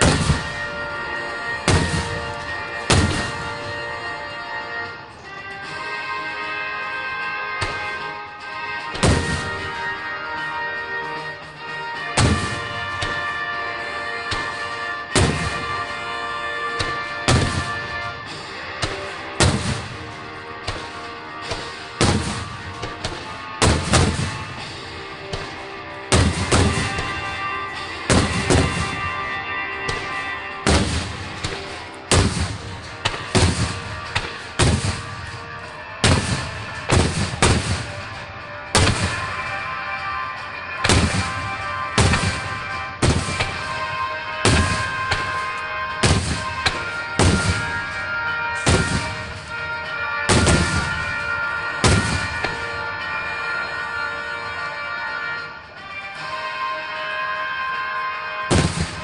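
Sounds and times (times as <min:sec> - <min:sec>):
fireworks booming: 0:00.0 - 0:00.9, 0:01.5 - 0:03.7, 0:08.8 - 0:09.9, 0:12.2 - 0:13.4, 0:14.2 - 0:16.1, 0:16.8 - 0:39.7, 0:40.7 - 0:53.2, 0:58.5 - 0:59.0
background music: 0:00.0 - 0:59.0.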